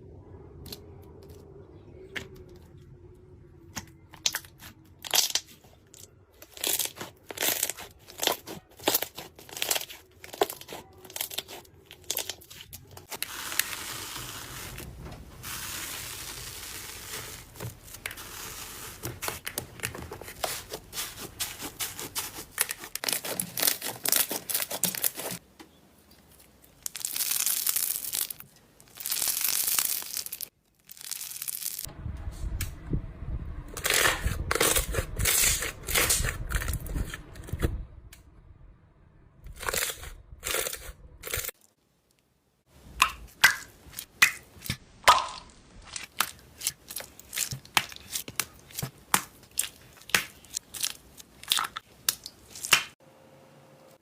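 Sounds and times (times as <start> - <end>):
slime crackling and tearing: 4.2 - 14.8, 15.4 - 25.4, 26.6 - 31.9, 43.5 - 53.0.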